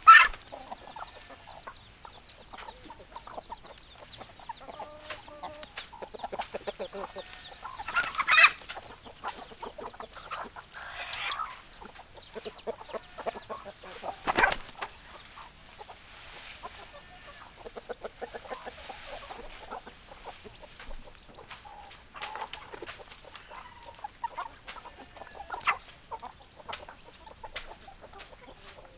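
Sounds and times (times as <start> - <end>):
chicken squawks: 0.0 - 1.7, 6.8 - 8.7, 9.8 - 11.6, 12.4 - 14.9
hens clucking: 0.0 - 28.9.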